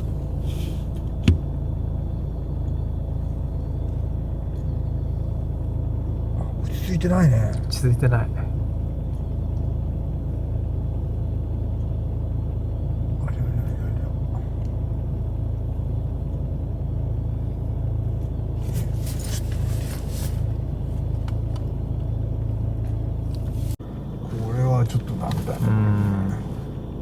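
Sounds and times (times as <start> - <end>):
car engine rumble from inside: 0.0 - 27.0
faint rustles: 18.6 - 21.6, 22.9 - 23.8.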